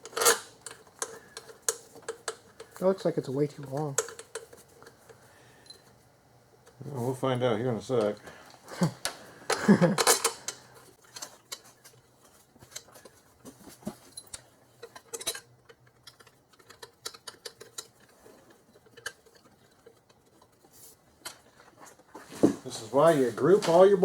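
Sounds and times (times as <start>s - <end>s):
metal bolts clicking: 0.0s - 2.8s, 14.2s - 18.1s.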